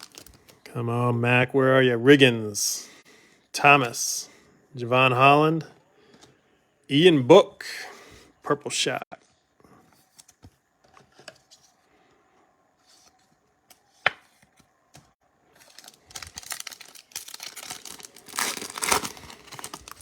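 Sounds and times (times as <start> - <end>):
foil wrapper tearing and crinkling: 0.0 - 0.6, 15.5 - 20.0.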